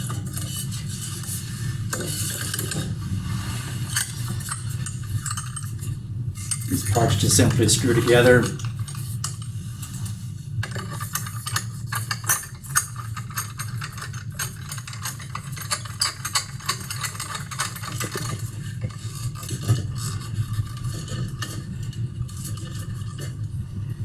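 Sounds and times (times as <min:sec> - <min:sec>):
steady low hum: 0:06.2 - 0:08.9
metal parts clicking and rattling: 0:10.7 - 0:20.3.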